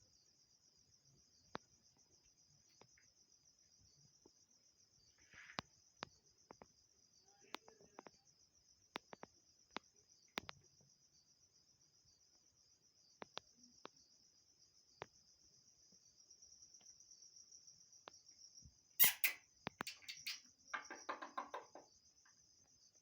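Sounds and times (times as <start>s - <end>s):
crickets chirping: 0.0s - 23.0s
rapid repeated chirping: 19.0s - 21.8s.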